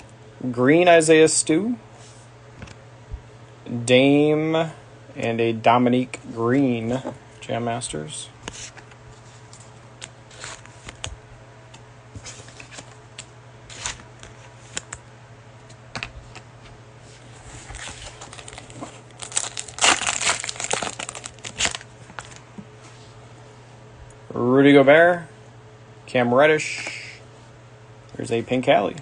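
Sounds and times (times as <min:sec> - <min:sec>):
trading cards rustling: 0:17.5 - 0:22.4
cellophane wrapper crinkling and tearing: 0:17.7 - 0:22.4.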